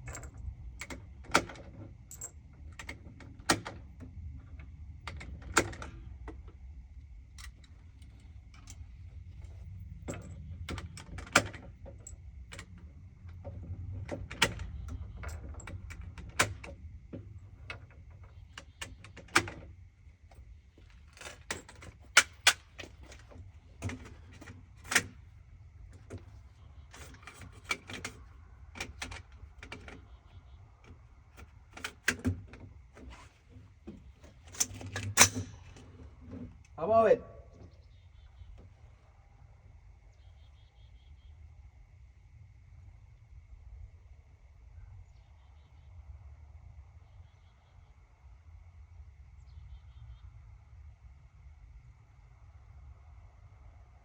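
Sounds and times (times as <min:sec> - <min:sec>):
sharp clicks and knocks: 0:20.3 - 0:25.2.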